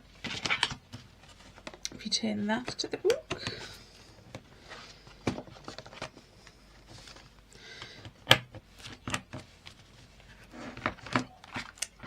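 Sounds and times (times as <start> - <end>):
paper pages shuffling: 4.4 - 7.5, 8.7 - 12.0.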